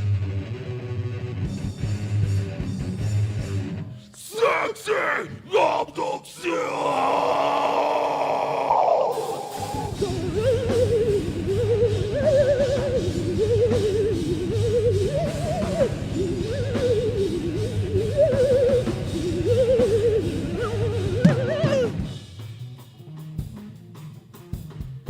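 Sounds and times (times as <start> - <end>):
heavy metal band playing live: 0.0 - 25.0
rapid drumming: 9.4 - 25.0.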